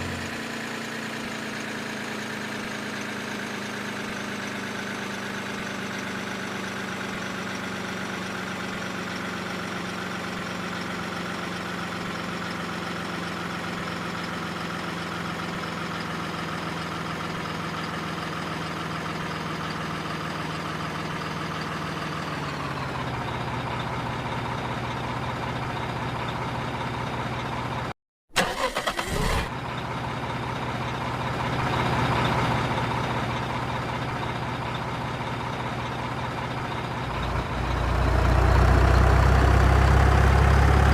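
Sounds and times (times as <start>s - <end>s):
toy truck engine idling: 28.4s - 40.6s.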